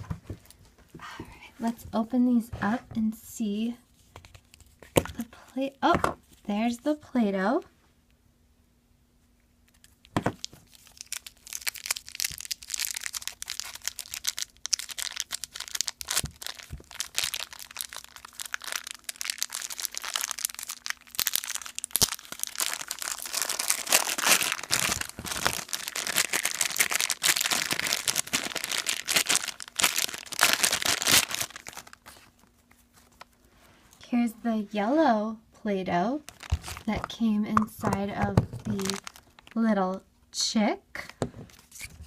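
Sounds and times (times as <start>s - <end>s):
plastic wrapping crinkling and tearing: 9.7s - 33.4s, 36.2s - 39.7s.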